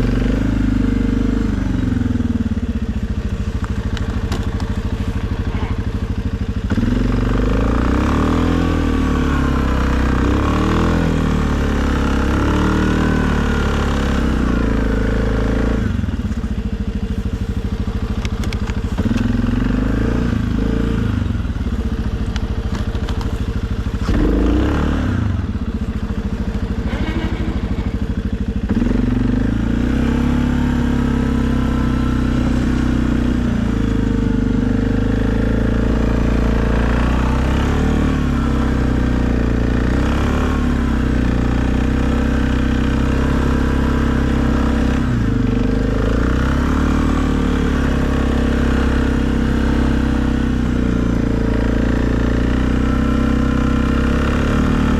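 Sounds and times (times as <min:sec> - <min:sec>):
atv engine under load: 0:00.0 - 0:54.9.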